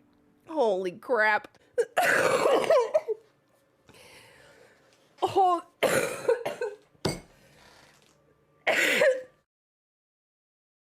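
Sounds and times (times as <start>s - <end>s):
girl coughing: 1.8s - 3.2s, 5.2s - 6.8s, 8.7s - 9.3s.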